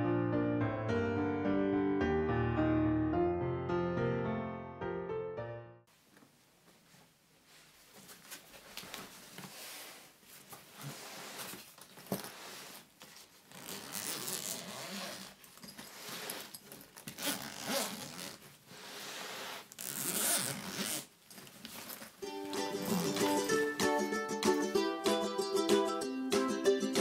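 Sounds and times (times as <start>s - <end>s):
rasping rustling handling noise: 21.2s - 23.5s.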